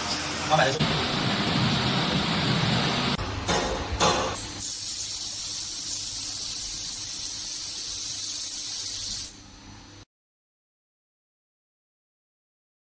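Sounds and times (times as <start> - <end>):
high-pitched gas hiss: 4.4 - 9.4.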